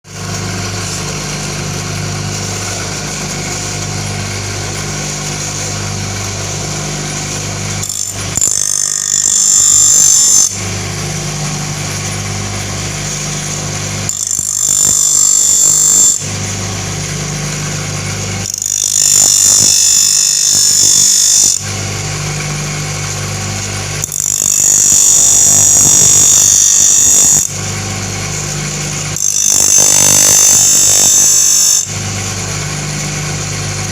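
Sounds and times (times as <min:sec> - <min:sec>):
electric grinder humming: 0:00.1 - 0:33.9
high-pitched grinding hiss: 0:24.0 - 0:27.5, 0:28.3 - 0:31.9.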